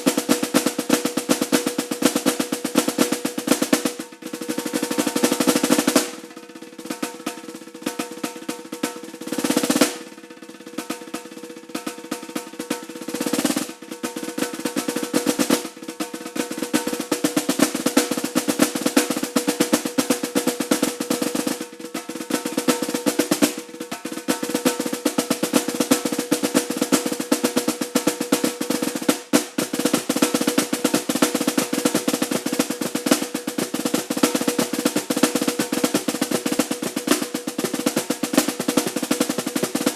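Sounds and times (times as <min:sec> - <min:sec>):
snare drum rolls: 0:00.0 - 0:39.9.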